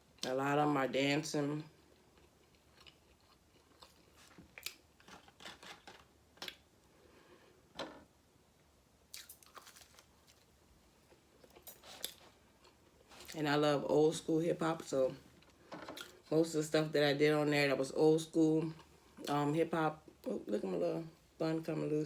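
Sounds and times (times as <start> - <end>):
person chewing: 1.7 - 6.7, 9.1 - 13.4.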